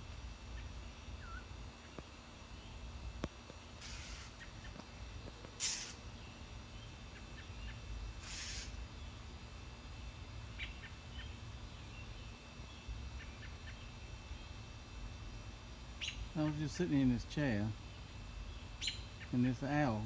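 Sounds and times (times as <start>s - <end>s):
small bird chirping: 0.5s - 2.8s, 3.8s - 4.8s, 5.6s - 9.2s, 10.5s - 14.6s, 16.0s - 16.5s, 17.9s - 19.4s.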